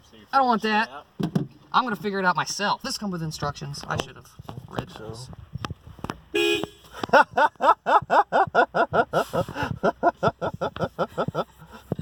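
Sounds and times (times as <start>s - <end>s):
man laughing hard: 6.9s - 12.0s.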